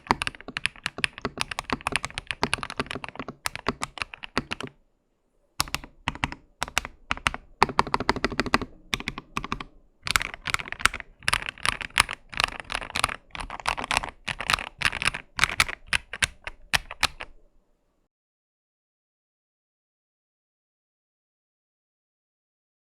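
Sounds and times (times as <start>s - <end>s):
mechanical keyboard typing: 0.0s - 4.8s, 5.6s - 17.4s.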